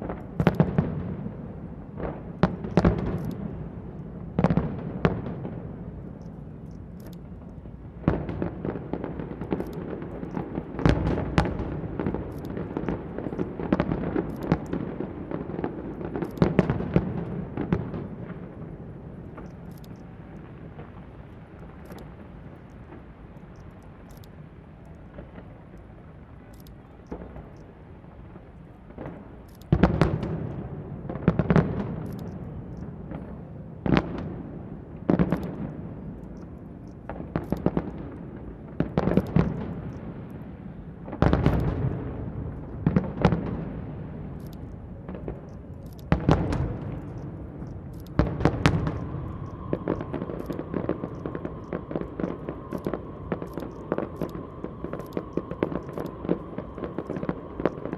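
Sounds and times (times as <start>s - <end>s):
fireworks booming: 0.0s - 57.9s
steady tone: 48.0s - 57.9s.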